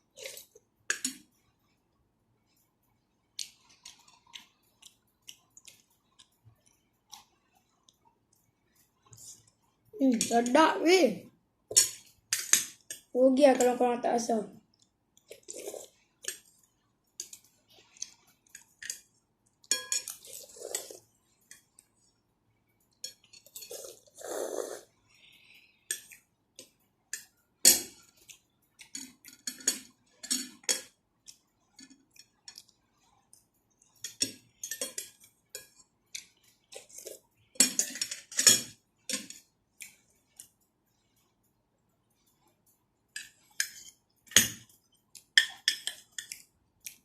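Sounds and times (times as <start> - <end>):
cutlery clinking against a bowl: 0.2 - 1.3, 11.7 - 13.8, 15.3 - 16.6, 17.2 - 21.9, 22.9 - 24.1, 25.9 - 32.8, 33.8 - 40.5, 43.1 - 47.0.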